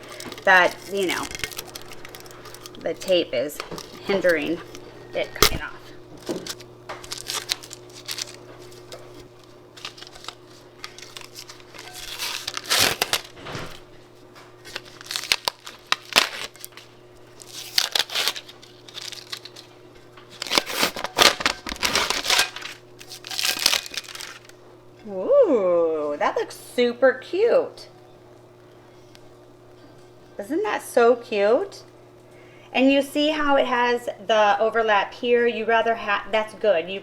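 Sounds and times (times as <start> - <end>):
paper and tape crinkling and tearing: 0.0 - 24.6.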